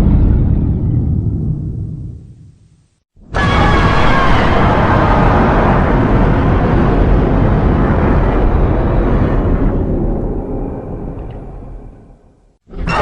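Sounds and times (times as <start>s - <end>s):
loud rumbling blast: 3.2s - 12.3s.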